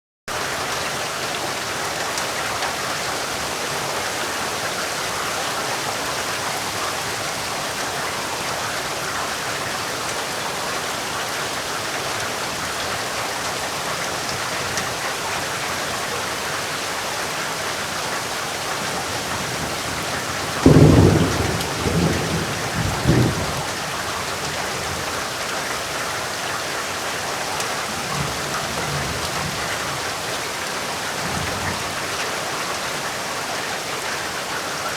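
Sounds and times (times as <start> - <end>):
heavy rain: 0.3 - 34.9
thunder rumbling: 18.8 - 25.1.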